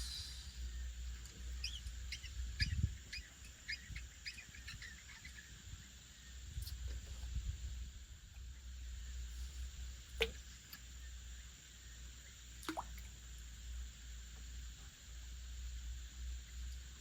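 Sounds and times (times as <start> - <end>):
water drops plopping into water: 10.2 - 10.4, 12.6 - 13.1.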